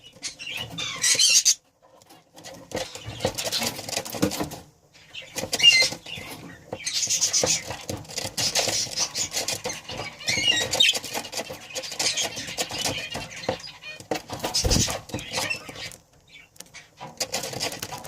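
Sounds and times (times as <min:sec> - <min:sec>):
budgerigars chattering: 0:00.0 - 0:01.6, 0:05.0 - 0:17.0.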